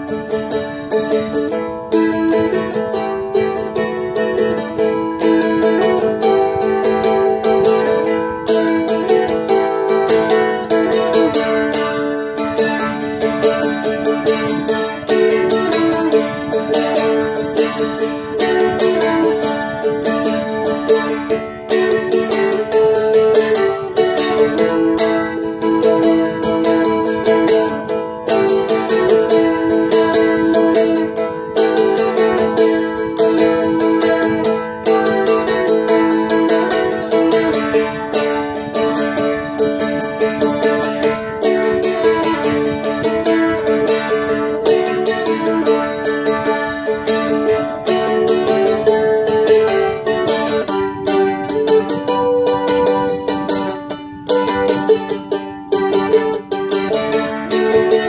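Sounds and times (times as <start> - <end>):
strummed dulcimer melody: 0.0 - 58.0.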